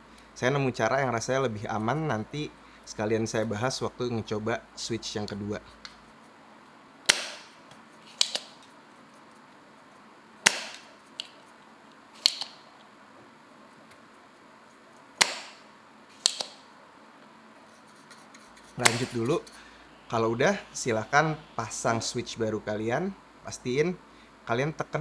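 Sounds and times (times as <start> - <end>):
desoldering pump snapping: 7.1 - 8.6, 10.4 - 11.4, 12.2 - 12.7, 15.2 - 16.6, 18.6 - 21.5.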